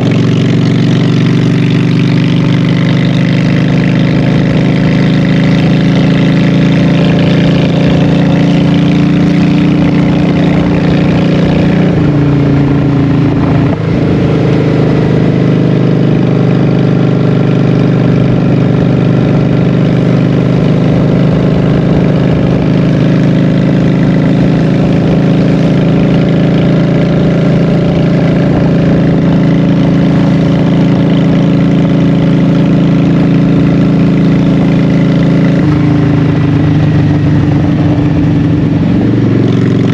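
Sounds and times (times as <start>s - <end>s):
motorcycle engine running loud: 0.0s - 39.9s.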